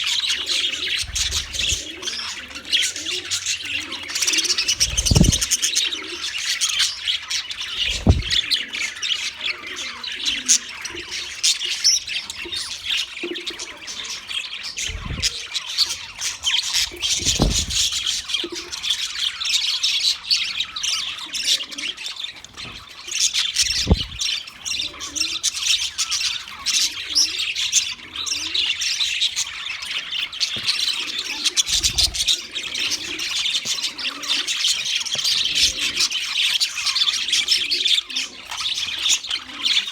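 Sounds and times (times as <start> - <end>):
budgerigars chattering and squawking: 0.0 - 39.9
dull thumps: 4.8 - 5.5, 7.8 - 8.4, 14.9 - 15.4, 16.9 - 18.1, 23.6 - 24.2.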